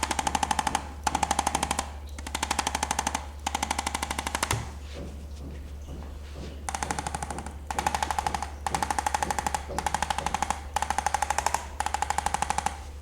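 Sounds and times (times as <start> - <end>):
steady low hum: 0.0 - 13.0
motorised device tapping and buzzing: 6.7 - 12.9.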